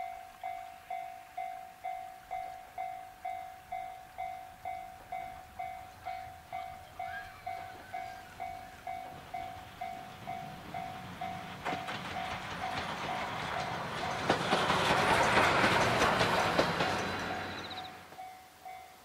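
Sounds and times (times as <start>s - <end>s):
level-crossing alarm bell: 0.0s - 14.3s, 17.1s - 19.0s
train passing: 0.0s - 18.8s
clacking train wheels: 3.2s - 18.3s.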